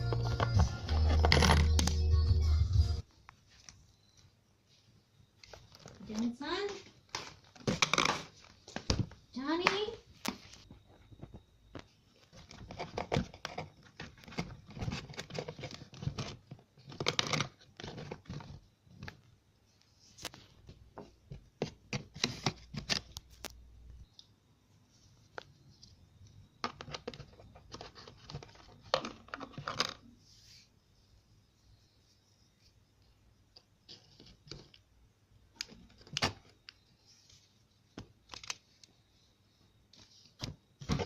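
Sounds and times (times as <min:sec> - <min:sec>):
cardboard and plastic rustling: 0:00.0 - 0:02.0, 0:05.4 - 0:09.2, 0:10.2 - 0:19.3, 0:26.7 - 0:30.1, 0:40.0 - 0:41.0.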